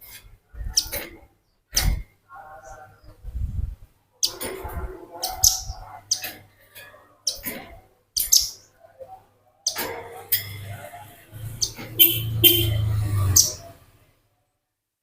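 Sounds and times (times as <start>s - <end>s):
bird chirping: 0.6s - 2.0s, 4.2s - 4.4s, 5.2s - 6.5s, 7.2s - 7.5s, 8.2s - 9.8s, 11.3s - 13.9s.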